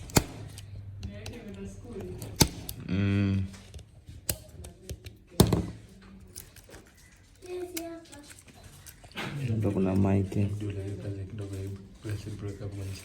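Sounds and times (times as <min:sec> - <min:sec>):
short vocal hum: 0:02.8 - 0:03.5.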